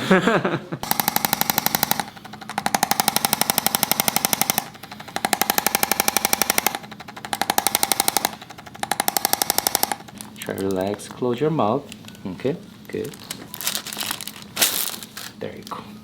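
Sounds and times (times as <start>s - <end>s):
handheld percussion instrument tapping: 0.8s - 10.2s.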